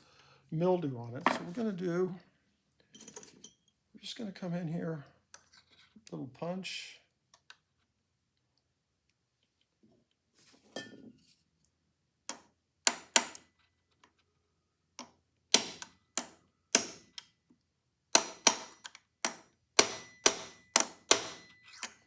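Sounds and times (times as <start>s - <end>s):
hammer tapping metal punch: 18.2s - 21.9s.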